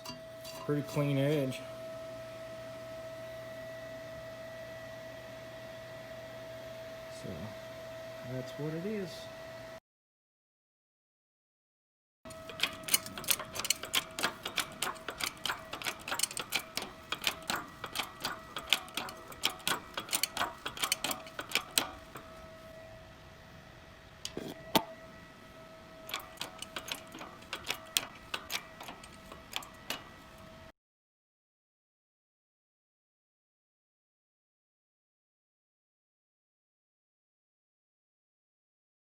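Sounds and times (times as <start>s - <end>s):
steady ringing tone: 12.3s - 23.1s, 24.3s - 30.7s.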